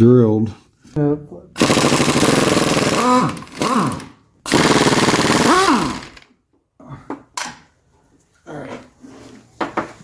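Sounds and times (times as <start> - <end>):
impact wrench hammering: 1.6 - 6.2
falling whine of wrench: 4.6 - 6.2.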